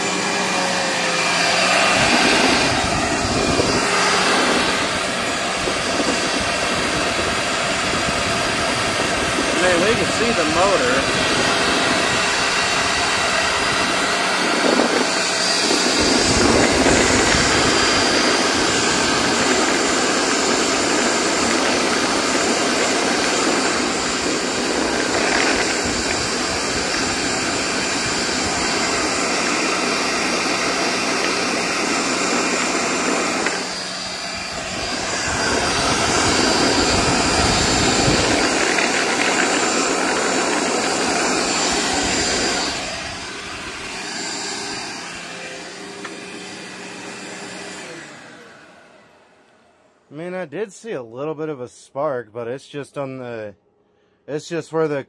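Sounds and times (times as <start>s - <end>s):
vacuum cleaner motor whining: 0.0s - 50.1s.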